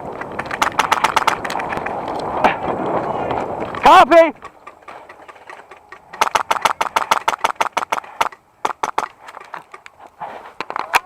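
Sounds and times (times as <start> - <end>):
airsoft gunfire: 0.6 - 1.4, 6.2 - 9.1.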